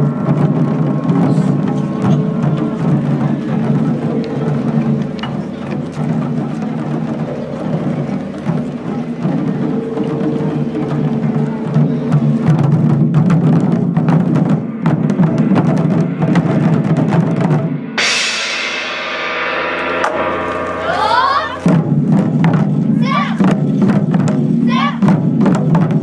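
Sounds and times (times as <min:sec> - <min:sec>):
taiko drums: 0:00.0 - 0:26.0
loud ringing crash: 0:18.3 - 0:23.0.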